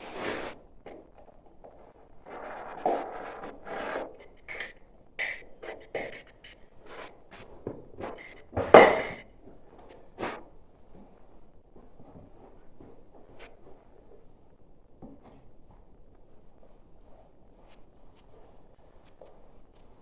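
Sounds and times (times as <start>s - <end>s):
hands scraping materials: 1.8s - 7.1s, 8.0s - 9.2s.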